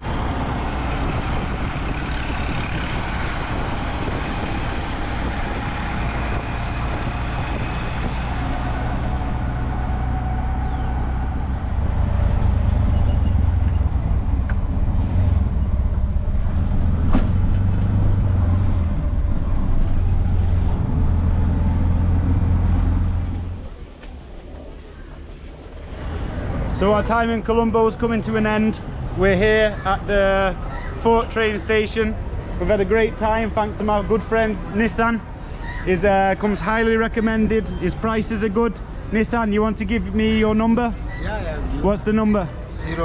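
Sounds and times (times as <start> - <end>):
vehicle engine running: 0.0 - 26.6
street traffic noise: 0.0 - 43.0.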